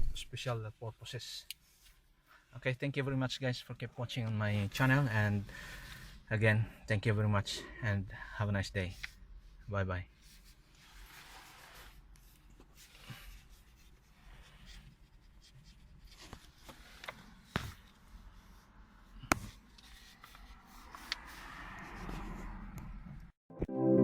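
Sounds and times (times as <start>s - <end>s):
faint rubbing and handling: 0.8s - 2.5s, 4.1s - 6.2s, 8.8s - 22.7s.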